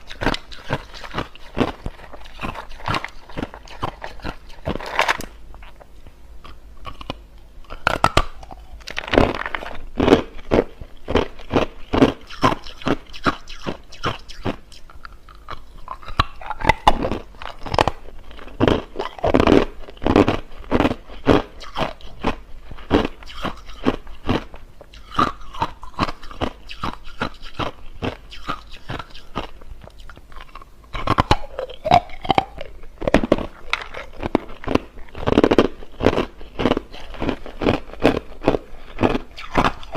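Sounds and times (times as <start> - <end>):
person crunching ice: 0.1 - 5.3, 7.8 - 13.4, 16.8 - 28.2, 31.1 - 39.9.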